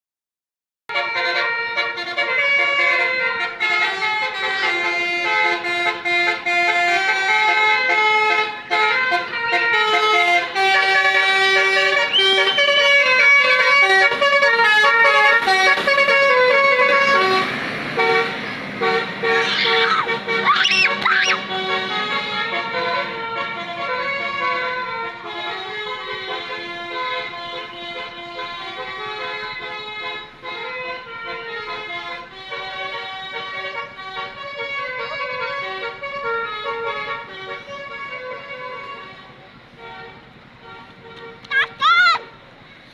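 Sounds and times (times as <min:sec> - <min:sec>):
musical air horn playing a tune: 0:00.9 - 0:39.1.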